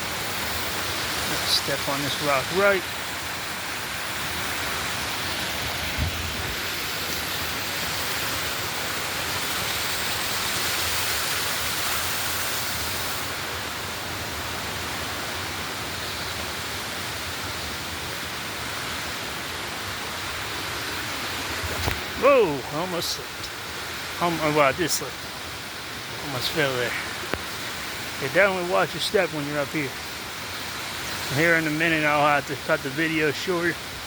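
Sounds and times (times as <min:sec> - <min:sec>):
waterfall rushing: 0:00.0 - 0:34.0
low thump: 0:05.9 - 0:06.6.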